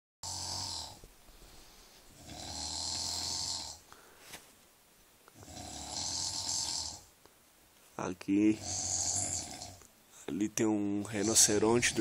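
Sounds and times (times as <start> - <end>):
man snoring: 0.2 - 1.0, 2.1 - 3.8, 5.4 - 7.1, 8.4 - 9.9, 11.1 - 12.0.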